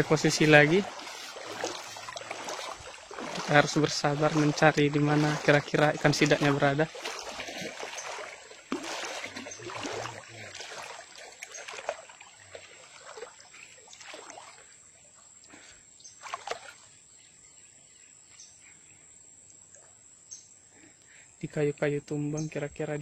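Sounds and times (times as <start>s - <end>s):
water splashing: 0.0s - 17.0s.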